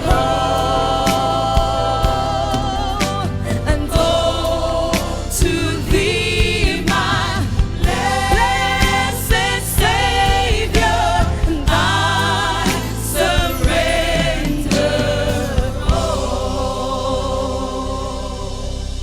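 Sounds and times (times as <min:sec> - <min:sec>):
instrumental accompaniment: 0:00.0 - 0:19.0
voices singing: 0:00.0 - 0:19.0.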